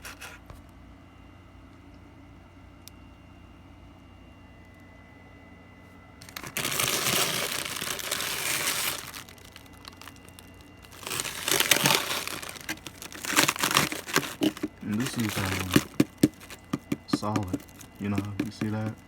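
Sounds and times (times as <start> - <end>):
scraping frost ice in freezer: 0.0 - 0.5, 6.2 - 19.0.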